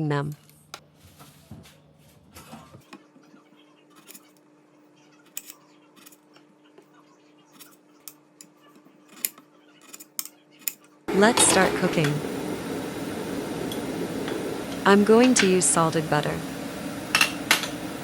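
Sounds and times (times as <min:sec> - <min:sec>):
faint steady hum: 0:11.1 - 0:18.0.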